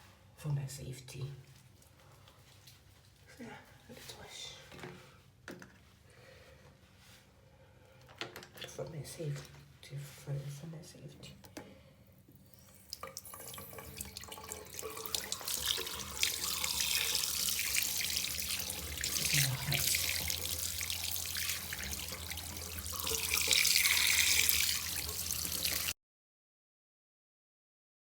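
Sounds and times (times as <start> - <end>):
tap water splashing into sink: 12.6 - 25.9.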